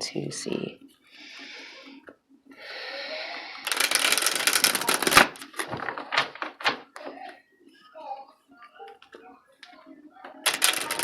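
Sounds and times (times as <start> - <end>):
tarot cards being shuffled: 3.6 - 6.9, 10.4 - 11.0.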